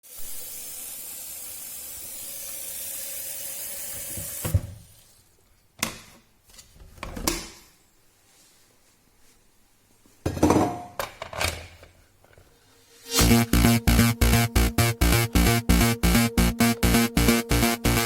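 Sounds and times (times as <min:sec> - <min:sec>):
water running from a tap: 0:00.1 - 0:04.6.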